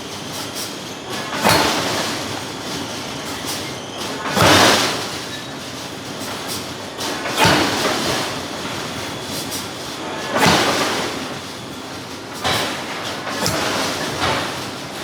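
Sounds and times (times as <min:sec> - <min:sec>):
forging hammer heavy blows: 0:12.4 - 0:15.0.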